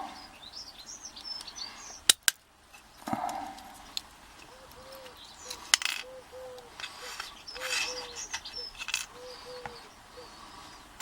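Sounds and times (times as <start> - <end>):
dove cooing: 0.0 - 0.6, 3.0 - 10.8
birds chirping: 0.0 - 11.0
tool scraping metal: 6.8 - 9.1.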